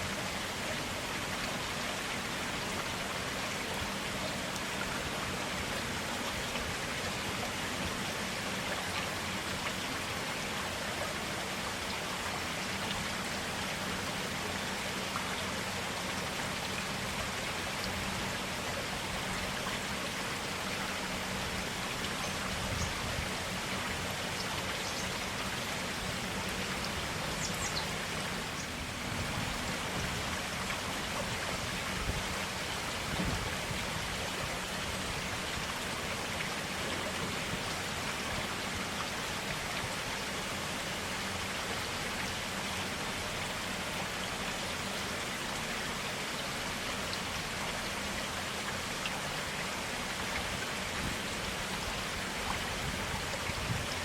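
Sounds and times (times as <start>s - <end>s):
stream flowing: 0.0s - 54.0s
water splashes and drips: 0.0s - 54.0s.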